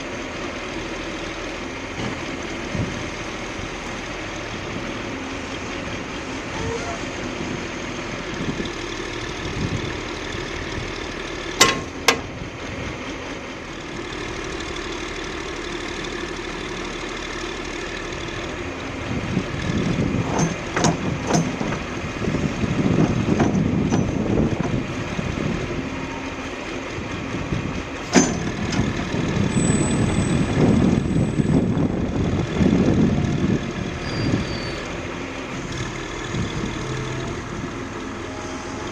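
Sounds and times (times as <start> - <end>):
diesel engine running: 0.0 - 38.9
sharp metallic knocks: 11.6 - 12.4, 28.1 - 28.9.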